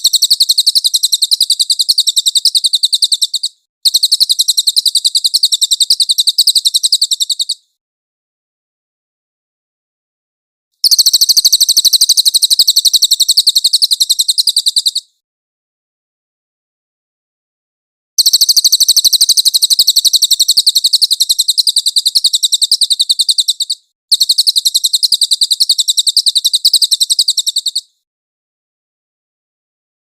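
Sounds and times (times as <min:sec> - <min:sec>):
bird singing high trill: 0:00.0 - 0:07.7, 0:10.8 - 0:15.1, 0:18.2 - 0:28.0.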